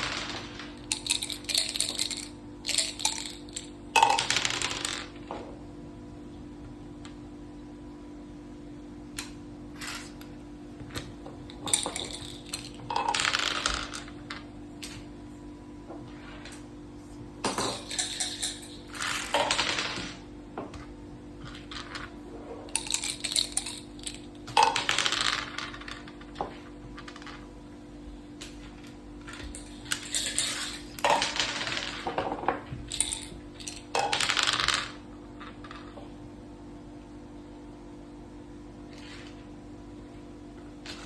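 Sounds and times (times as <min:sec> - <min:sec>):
dice clattering on a board: 0:00.0 - 0:05.5, 0:10.9 - 0:15.1, 0:17.5 - 0:20.8, 0:22.8 - 0:27.5, 0:28.4 - 0:36.1
low steady hum: 0:00.0 - 0:41.0.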